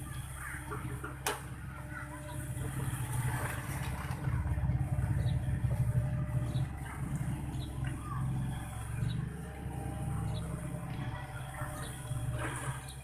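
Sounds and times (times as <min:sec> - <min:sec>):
excavator diesel engine running: 0:00.0 - 0:13.0.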